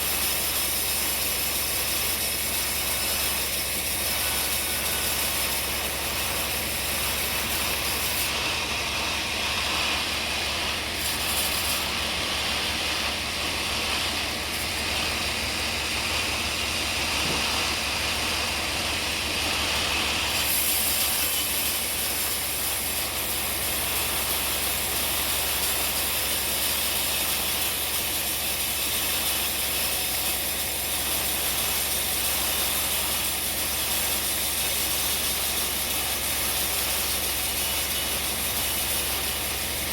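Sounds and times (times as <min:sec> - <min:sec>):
saw blade hissing through wood: 0:00.0 - 0:39.9
low engine drone: 0:14.9 - 0:20.1.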